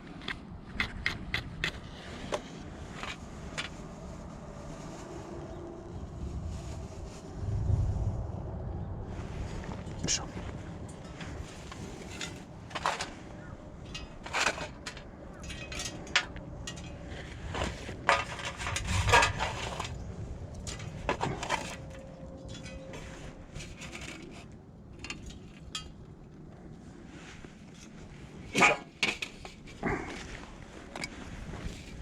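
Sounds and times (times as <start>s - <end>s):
firewood clattering into metal stove: 10.9s - 26.1s, 28.5s - 30.3s.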